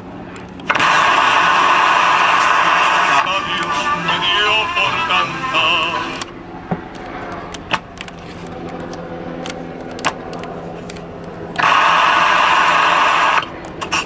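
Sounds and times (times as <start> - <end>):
radio hum and hiss: 0.0 - 8.7, 11.6 - 14.0
loud radio static: 0.7 - 6.4, 11.6 - 14.0.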